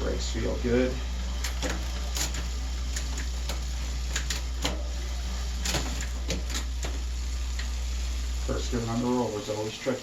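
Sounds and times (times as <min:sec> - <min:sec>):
bicycle on rollers humming: 0:00.0 - 0:10.0
bike mechanical clicks: 0:01.1 - 0:07.8.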